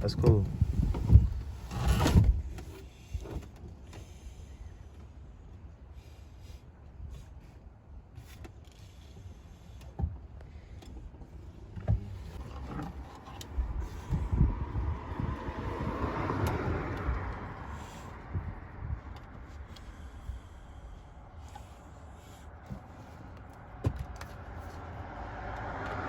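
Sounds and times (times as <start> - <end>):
knocks and clunks of car parts: 0.0 - 4.0, 9.8 - 19.9, 22.6 - 24.8.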